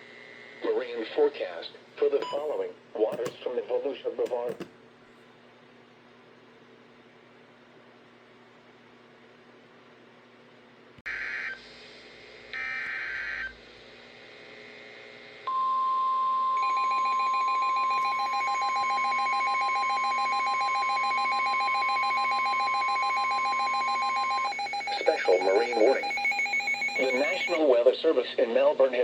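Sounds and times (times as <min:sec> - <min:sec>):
rapidly pulsing alarm: 0:16.6 - 0:27.6
steady warning alarm tone: 0:16.6 - 0:27.6
screeching digital header tones: 0:24.6 - 0:27.6.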